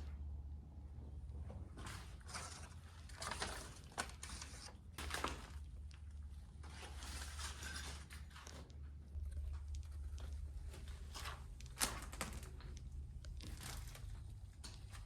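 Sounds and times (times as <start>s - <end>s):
steady low hum: 0.0s - 3.5s, 8.7s - 15.0s.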